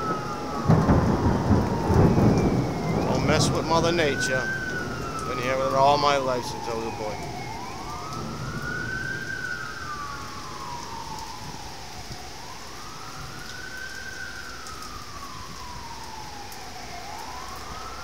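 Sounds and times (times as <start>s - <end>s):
heavy rain hiss: 0.0s - 18.0s
siren wailing: 0.0s - 18.0s.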